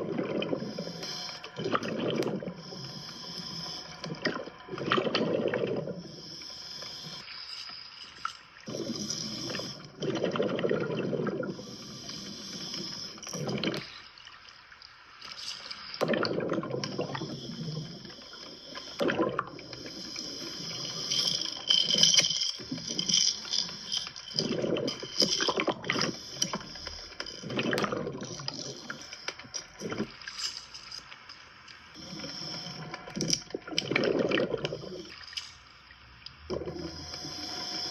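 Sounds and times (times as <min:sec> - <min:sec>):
exhaled bubbles rumbling: 0:00.0 - 0:03.0, 0:04.0 - 0:06.3, 0:08.6 - 0:12.2, 0:12.8 - 0:14.0, 0:16.0 - 0:30.3, 0:32.0 - 0:35.3, 0:36.2 - 0:37.9
regulator hiss: 0:00.6 - 0:04.8, 0:06.0 - 0:10.0, 0:11.6 - 0:14.2, 0:16.9 - 0:27.6, 0:28.2 - 0:33.5, 0:36.6 - 0:37.9.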